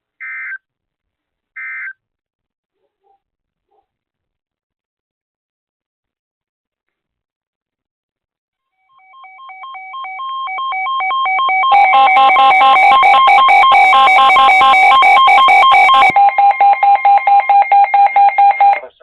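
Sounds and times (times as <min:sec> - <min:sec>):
weather radio alarms: 0:08.9 - 0:18.9
weather radio pulsing beeps: 0:08.9 - 0:18.9.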